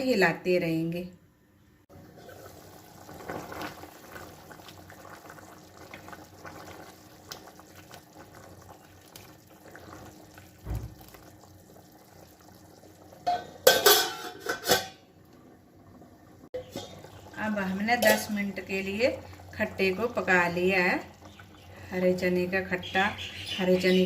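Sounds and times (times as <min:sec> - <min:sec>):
gravy simmering in a pot: 0:01.9 - 0:24.0
pot lid and spoon clattering: 0:13.2 - 0:15.0.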